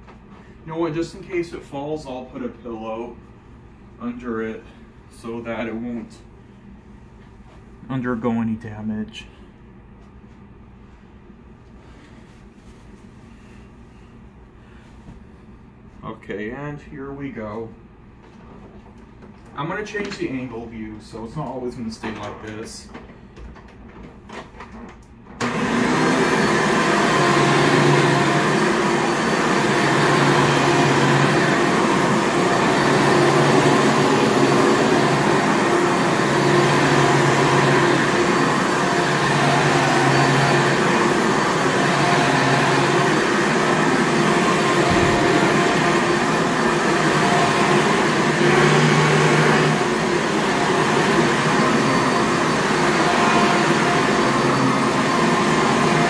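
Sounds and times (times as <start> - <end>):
vacuum cleaner running: 25.4 - 56.0.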